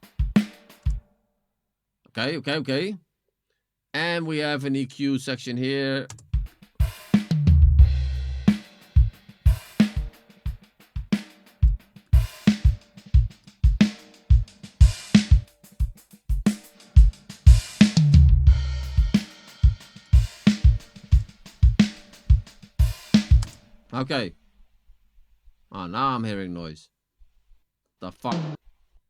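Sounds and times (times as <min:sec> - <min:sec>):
looped drum kit beat: 0:00.0 - 0:01.1, 0:06.1 - 0:23.8, 0:28.3 - 0:28.6.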